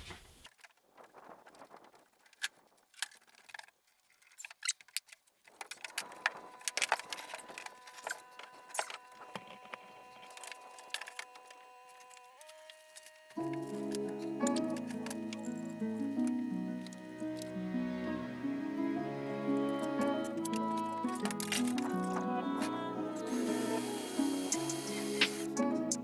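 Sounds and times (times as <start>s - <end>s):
quiet background music: 5.8s - 26.0s.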